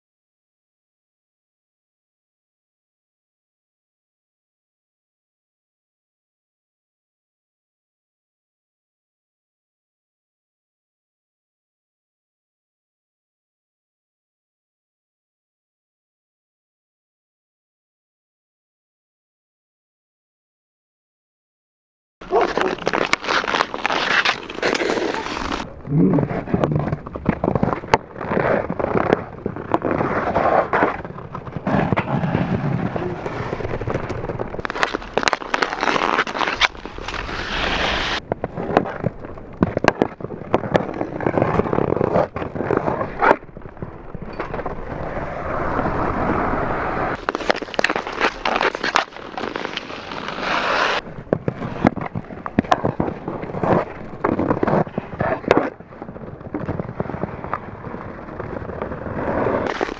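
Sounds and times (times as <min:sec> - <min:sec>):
hockey sticks scraping on ice: 0:22.2 - 0:25.7, 0:26.3 - 0:34.0, 0:34.6 - 0:39.0, 0:47.0 - 0:55.7, 0:56.5 - 0:59.9
pucks cracking: 0:22.2 - 0:25.7, 0:34.6 - 0:39.0, 0:47.2 - 0:55.7, 0:59.7 - 0:59.9.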